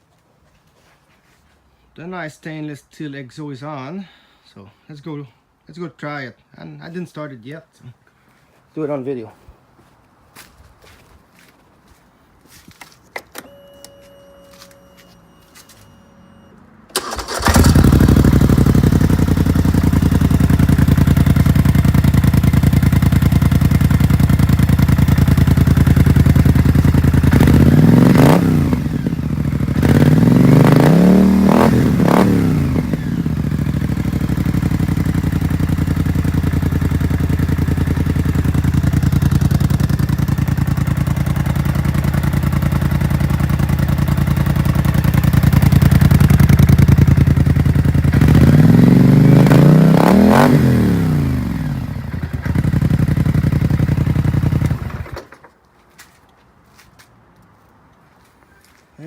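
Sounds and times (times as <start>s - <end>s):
atv engine revving: 16.9s - 55.3s
atv engine idling: 17.0s - 55.2s.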